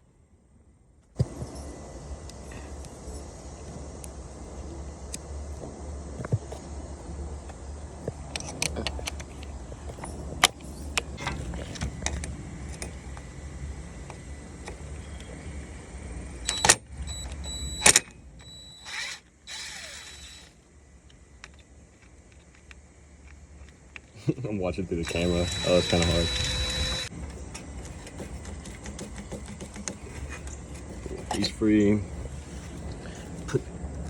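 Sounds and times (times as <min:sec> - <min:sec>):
steady low hum: 0:00.0 - 0:34.0
cordless drill whirring: 0:18.4 - 0:20.6, 0:25.0 - 0:27.1
hand tools clicking and knocking: 0:25.0 - 0:30.6.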